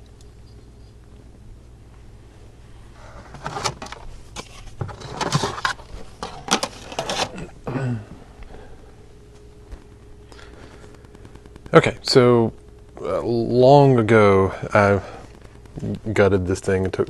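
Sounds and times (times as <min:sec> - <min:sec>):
plastic and metal parts clattering: 0:03.2 - 0:07.5.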